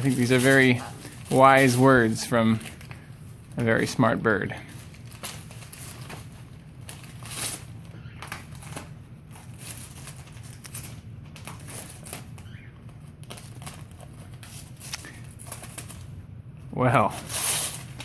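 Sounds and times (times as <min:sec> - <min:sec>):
newspaper crinkling and tearing: 0:04.6 - 0:16.2.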